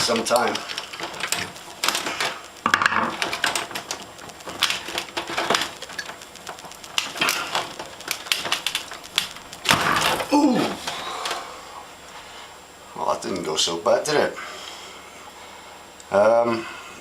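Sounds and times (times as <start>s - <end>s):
heat sink cracking and scraping: 0.0s - 11.4s.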